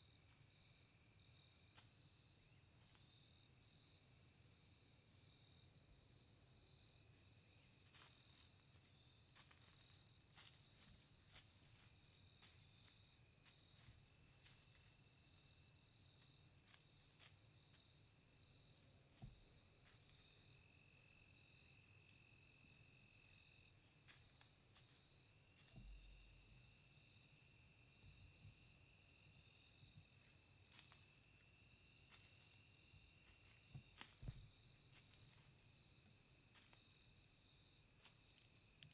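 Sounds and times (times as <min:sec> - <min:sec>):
high-pitched insects trilling: 0:06.6 - 0:38.9
faint ticks: 0:38.0 - 0:38.9.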